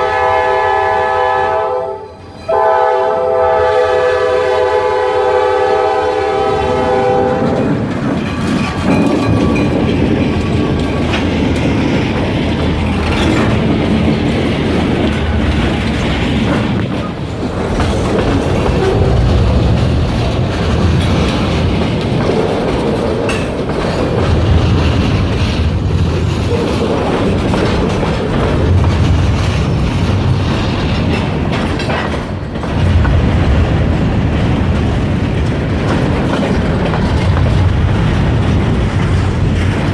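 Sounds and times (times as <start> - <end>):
train horn: 0.0 - 7.8
freight train rumbling past: 0.0 - 39.9.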